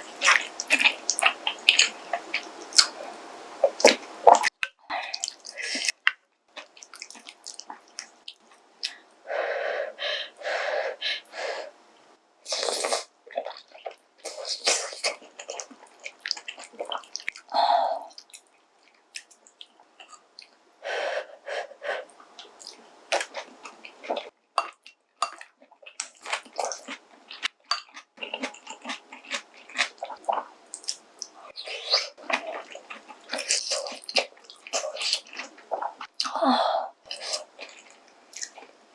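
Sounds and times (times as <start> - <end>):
wet chewing and slurping: 0.1 - 3.0, 12.5 - 17.5, 22.4 - 36.3, 37.1 - 38.7.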